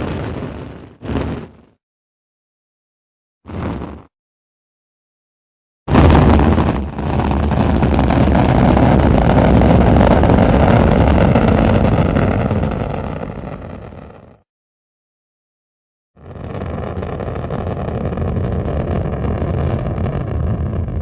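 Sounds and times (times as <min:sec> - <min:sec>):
rocket engines rumbling: 0:05.9 - 0:14.1, 0:16.3 - 0:21.0.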